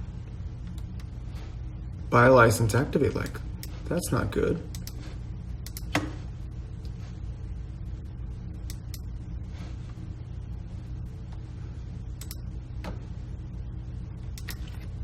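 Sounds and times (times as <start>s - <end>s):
low electrical hum: 0.0s - 15.0s
computer mouse clicks: 5.6s - 6.0s, 12.2s - 12.4s.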